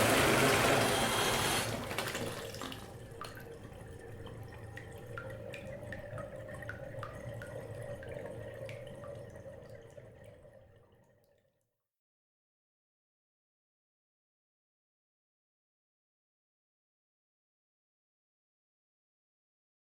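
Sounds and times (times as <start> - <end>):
running water gushing: 0.0 - 10.2
water drips plinking into tub: 1.8 - 11.5.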